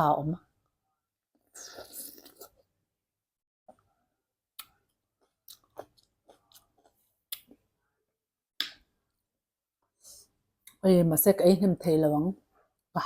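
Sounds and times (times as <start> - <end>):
chewing fruit: 4.6 - 7.6.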